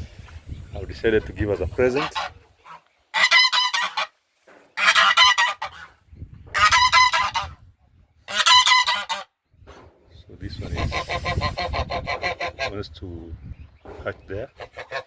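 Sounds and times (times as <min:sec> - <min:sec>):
goose honking: 0:01.5 - 0:04.2, 0:04.8 - 0:07.6, 0:08.3 - 0:09.3, 0:10.6 - 0:12.8, 0:14.6 - 0:15.0.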